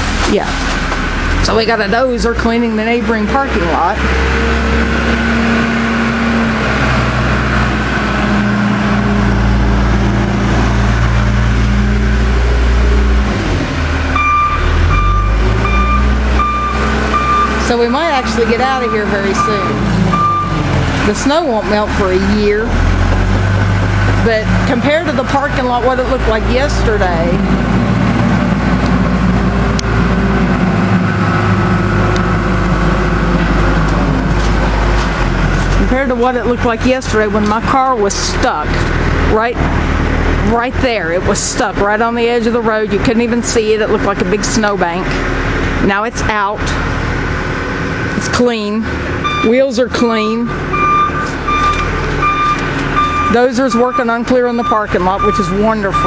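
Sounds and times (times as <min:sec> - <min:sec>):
bulldozer diesel engine: 0:00.0 - 0:56.0
reversing alarm beeping: 0:14.1 - 0:20.6, 0:49.2 - 0:56.0.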